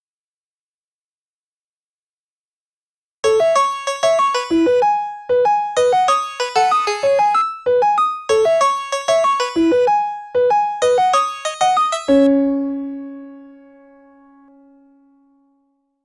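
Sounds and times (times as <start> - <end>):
electric piano ringtone melody: 3.2 - 15.0.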